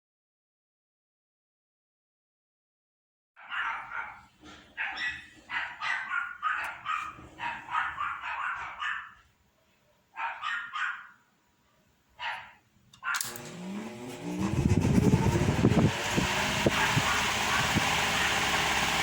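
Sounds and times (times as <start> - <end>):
small dog barking: 3.4 - 9.2, 10.1 - 11.2, 12.2 - 13.3, 16.7 - 18.5.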